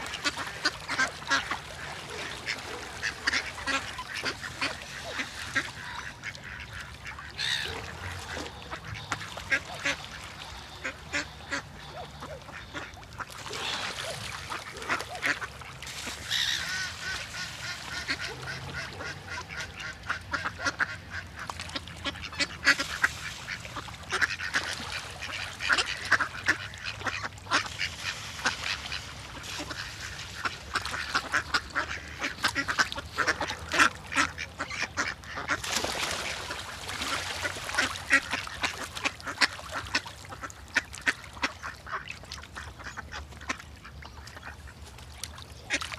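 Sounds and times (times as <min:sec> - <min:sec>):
flock of birds calling: 0:00.2 - 0:12.9, 0:16.1 - 0:18.9.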